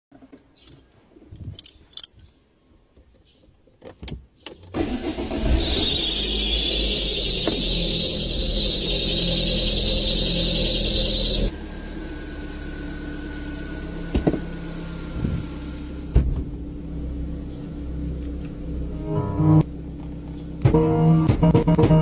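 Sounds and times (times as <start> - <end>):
car engine running: 5.6 - 22.0
knocks: 20.6 - 22.0.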